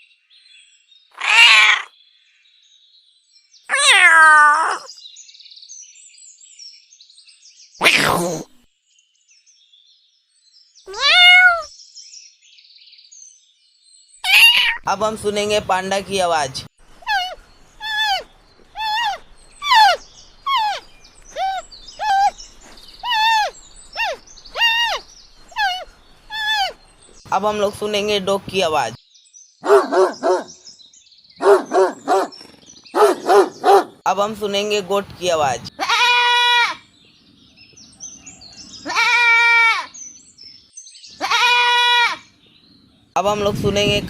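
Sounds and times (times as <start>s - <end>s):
panda calls: 1.2s - 1.9s, 3.7s - 4.9s, 7.8s - 8.5s, 10.9s - 11.7s, 14.2s - 14.8s, 17.0s - 18.2s, 18.8s - 20.8s, 23.0s - 25.0s, 25.6s - 26.8s
goat bleating: 10.9s - 11.7s, 35.8s - 36.8s, 38.8s - 39.9s, 41.2s - 42.2s.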